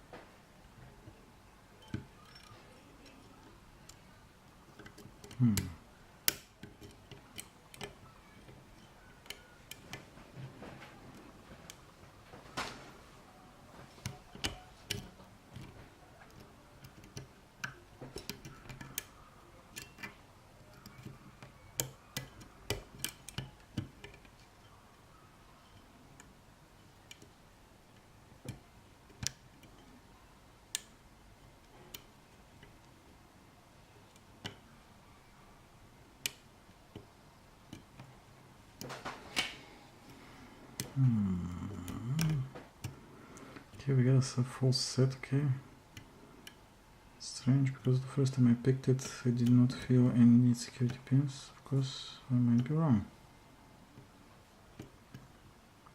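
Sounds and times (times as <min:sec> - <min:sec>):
lock picks clicking: 0:04.8 - 0:10.1, 0:14.0 - 0:24.8
person humming: 0:05.3 - 0:05.8, 0:40.9 - 0:42.6.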